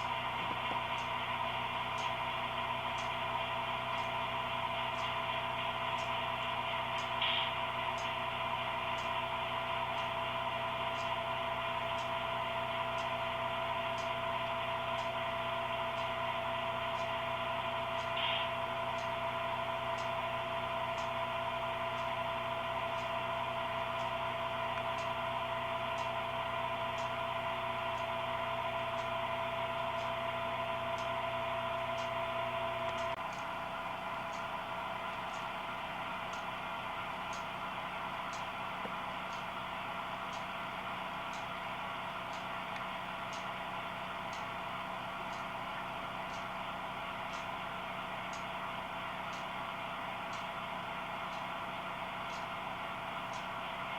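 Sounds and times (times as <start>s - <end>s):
light regular ticks: 0.0s - 1.2s, 1.9s - 2.3s, 2.9s - 3.2s, 3.9s - 4.2s, 4.8s - 5.2s, 5.9s - 6.2s, 6.9s - 8.2s, 8.9s - 9.3s, 9.9s - 10.2s, 10.8s - 11.3s, 11.9s - 12.3s, 12.9s - 13.2s, 13.9s - 14.3s, 14.9s - 15.2s, 15.9s - 17.2s, 17.9s - 19.3s, 19.9s - 20.2s, 20.9s - 21.2s, 21.9s - 22.2s, 22.9s - 23.2s, 23.8s - 25.2s, 25.9s - 26.3s, 26.9s - 27.2s, 29.9s - 30.2s, 30.9s - 31.2s, 31.9s - 32.2s, 32.8s - 33.5s, 34.2s - 35.6s, 36.2s - 36.6s, 37.2s - 37.6s, 38.2s - 52.6s, 53.2s - 53.7s
model train humming: 0.0s - 53.9s.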